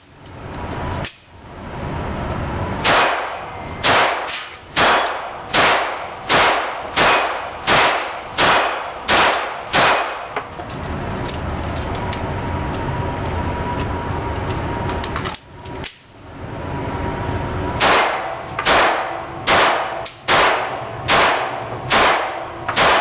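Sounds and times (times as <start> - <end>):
handgun shots with ringing tail: 2.8 - 10.4, 17.8 - 23.0.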